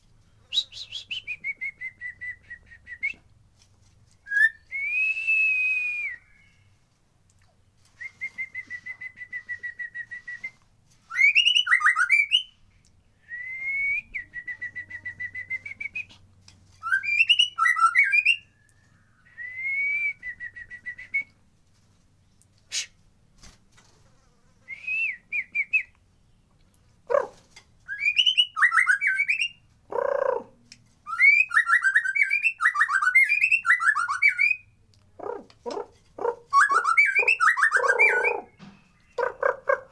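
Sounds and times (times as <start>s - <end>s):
songbird singing: 4.2s - 16.2s, 16.8s - 21.4s, 24.8s - 39.9s.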